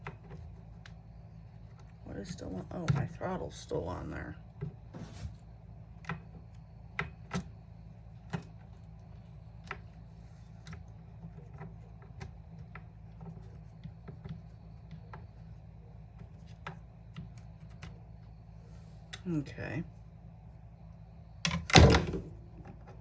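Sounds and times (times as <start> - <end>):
steady low hum: 0.0 - 23.0
light clicks and knocks of parts: 5.9 - 18.3.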